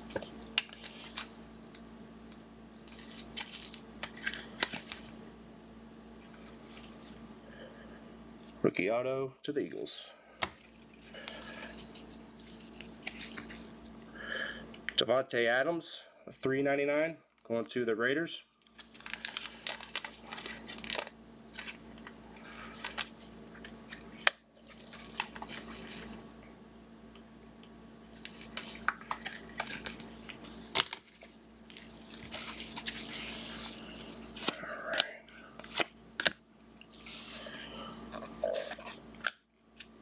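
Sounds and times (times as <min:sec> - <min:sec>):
plastic wrappers crinkling: 0:00.0 - 0:01.8, 0:02.8 - 0:05.2, 0:06.2 - 0:07.3, 0:10.5 - 0:14.0, 0:18.6 - 0:21.8, 0:22.4 - 0:26.3, 0:28.0 - 0:39.9
faint low hum: 0:00.0 - 0:40.0.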